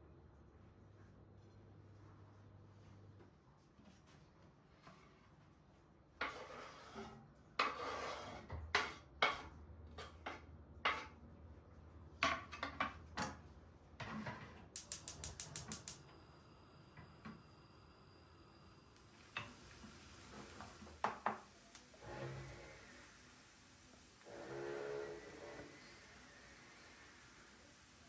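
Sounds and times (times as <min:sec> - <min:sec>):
quick clicks: 0:14.8 - 0:16.1
faint steady hum: 0:14.8 - 0:28.0.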